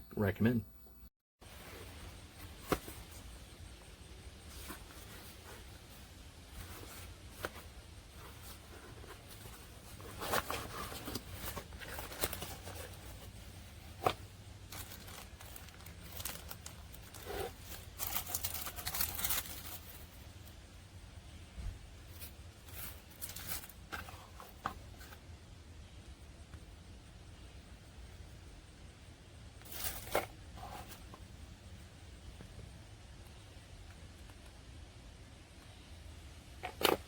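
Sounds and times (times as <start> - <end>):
rustling and crinkling: 1.4 - 20.7, 21.5 - 25.4, 29.6 - 32.6.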